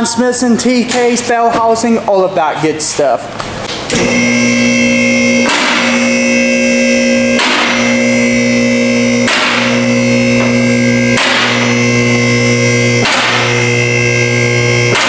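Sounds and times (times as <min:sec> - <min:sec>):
sustained synth chords: 0:03.9 - 0:15.0.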